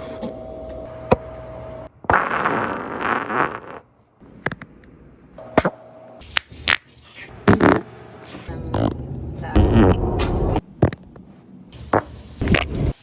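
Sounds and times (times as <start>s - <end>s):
long noisy fart: 2.1s - 3.9s.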